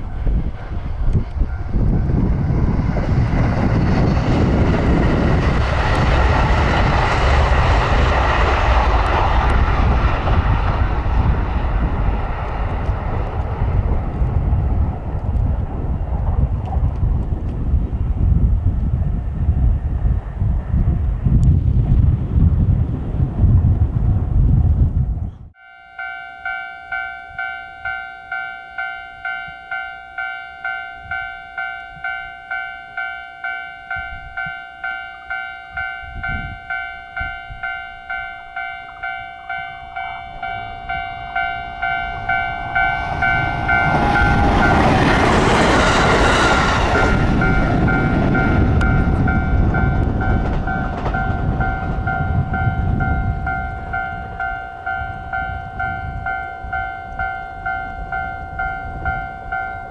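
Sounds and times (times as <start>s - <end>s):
train passing with wheel noise: 0.0s - 59.9s
level crossing bell clanging: 25.6s - 59.9s.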